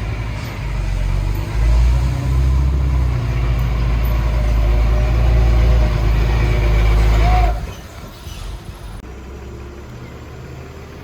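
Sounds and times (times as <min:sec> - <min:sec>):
diesel engine rumbling: 0:00.0 - 0:11.0.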